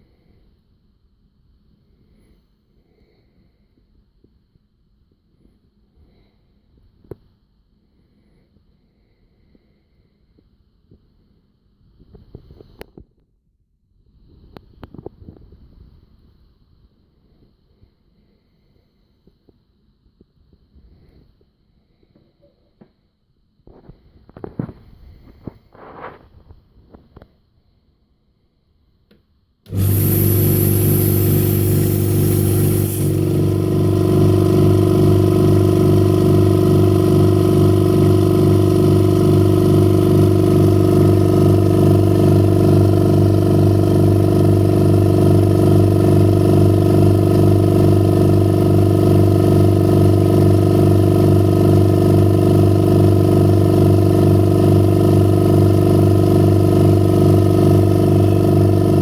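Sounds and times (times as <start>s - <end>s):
high hiss: 29.7s - 34.0s
motor humming: 29.7s - 59.0s.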